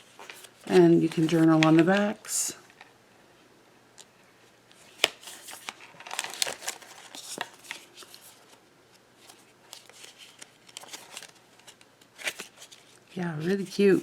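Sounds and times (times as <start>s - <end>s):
cards being handled: 0.0s - 2.4s, 4.8s - 8.6s, 9.2s - 13.9s
rustling and clicking of cards: 0.0s - 2.8s, 4.7s - 8.6s, 9.2s - 13.9s.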